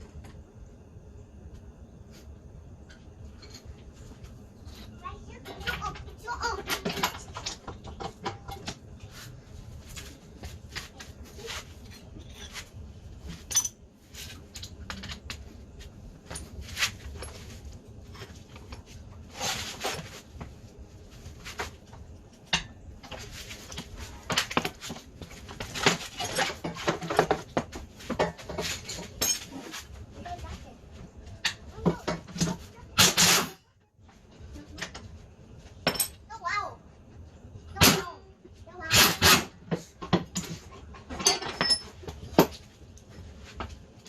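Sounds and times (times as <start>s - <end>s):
metal tools clinking: 13.3s - 15.4s, 28.2s - 29.8s, 35.8s - 36.2s, 40.3s - 42.7s.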